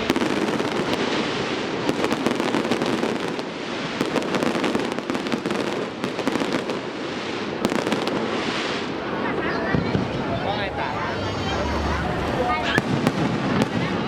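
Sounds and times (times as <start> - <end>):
fireworks crackling: 0.0 - 13.8
sharp fireworks cracks: 0.0 - 14.0.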